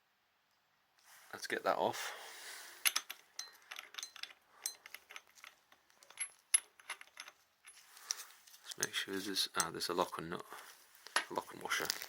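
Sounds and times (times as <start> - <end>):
metal tools and parts clinking: 2.8 - 10.2, 11.0 - 12.0.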